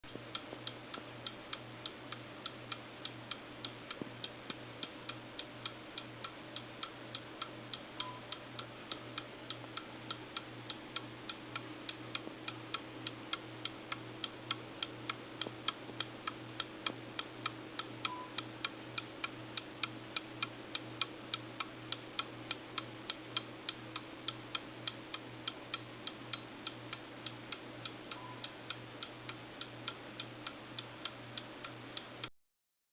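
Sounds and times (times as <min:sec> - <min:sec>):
clock ticking: 0:00.0 - 0:32.3
faint low hum: 0:00.1 - 0:32.3.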